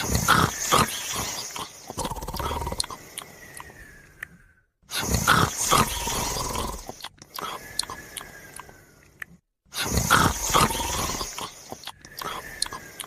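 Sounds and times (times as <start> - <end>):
faint whistling breath: 0.0 - 13.0
loud rough snoring: 2.0 - 2.9, 4.9 - 7.0, 9.8 - 11.6.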